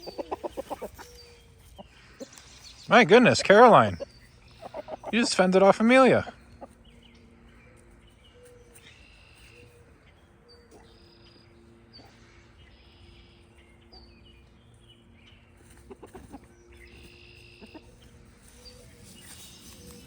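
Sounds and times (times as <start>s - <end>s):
chickens calling softly: 0.0s - 9.8s, 15.6s - 20.0s.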